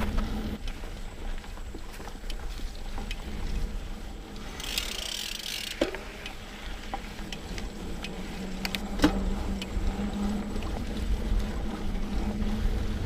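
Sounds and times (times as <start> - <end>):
bike rattling over trail: 0.0 - 13.0
bike tyres rumbling: 0.0 - 13.0
wind: 0.0 - 13.0
freewheel ratchet buzzing: 4.4 - 6.4.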